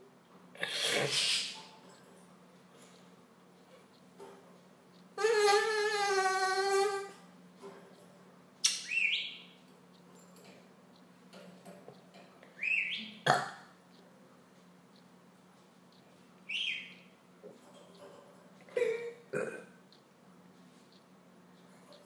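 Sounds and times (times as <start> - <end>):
sharp click: 8.6 - 9.3
budgerigar chirping: 8.7 - 9.6, 12.6 - 13.2, 16.5 - 17.1.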